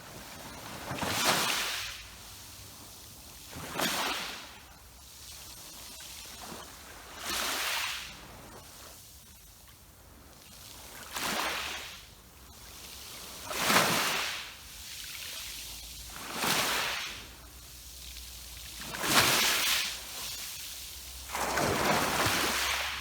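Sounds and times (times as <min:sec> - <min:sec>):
sea waves breaking against rocks: 0:18.7 - 0:23.0.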